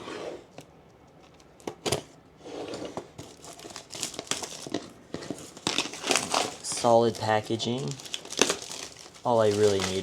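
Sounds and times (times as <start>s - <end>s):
packaging crinkling and tearing: 3.2s - 10.0s.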